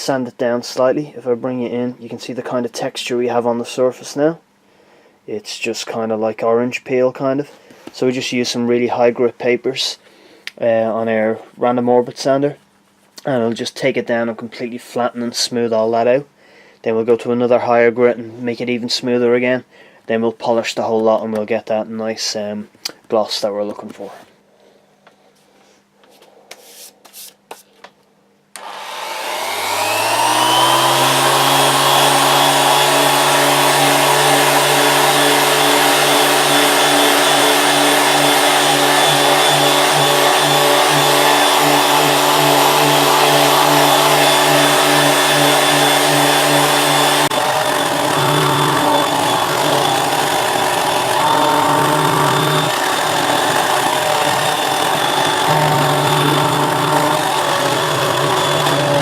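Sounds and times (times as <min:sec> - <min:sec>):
electric orbit sander running: 0:28.6 - 0:59.0.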